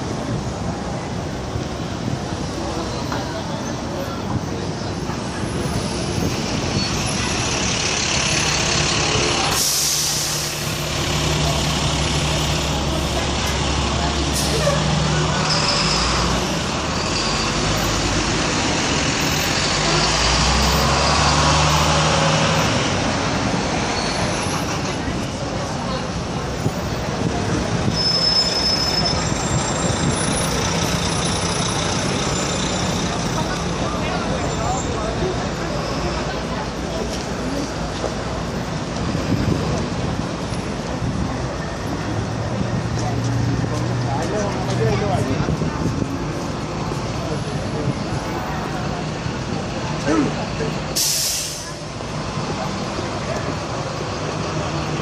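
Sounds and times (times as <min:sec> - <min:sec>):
city street traffic: 0:00.0 - 0:55.0
crowd voices: 0:00.0 - 0:55.0
air brakes hissing: 0:09.4 - 0:10.8, 0:50.9 - 0:51.8
high-pitched squeal: 0:14.3 - 0:18.2, 0:27.9 - 0:33.2.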